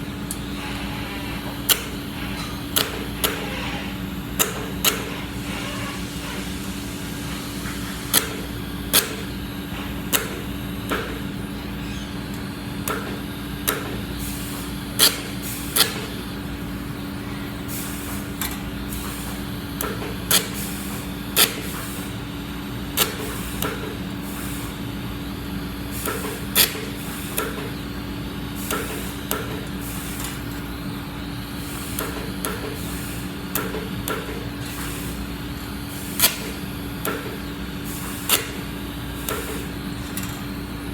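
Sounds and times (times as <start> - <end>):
steady hum: 0.0 - 40.9
welding arc crackle: 0.3 - 11.5.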